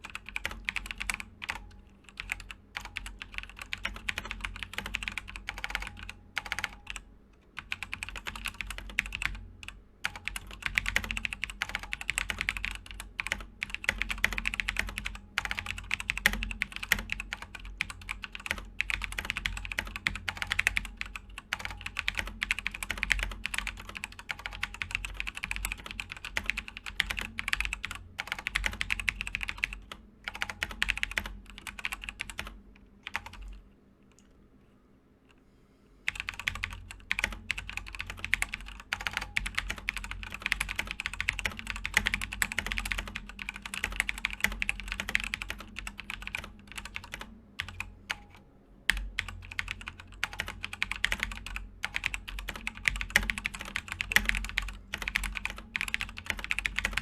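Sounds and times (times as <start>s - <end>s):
fast mechanical keyboard typing: 0.0s - 7.0s, 7.6s - 33.6s, 36.1s - 57.0s.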